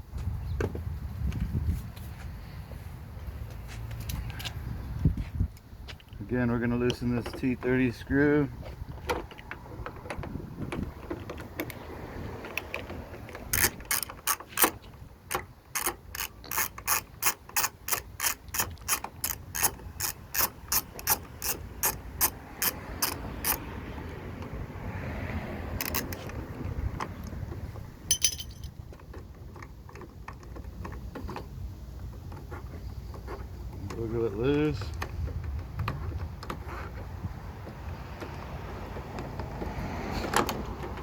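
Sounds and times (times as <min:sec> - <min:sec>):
ratcheting tool clicking: 0:12.5 - 0:23.6, 0:25.8 - 0:26.4.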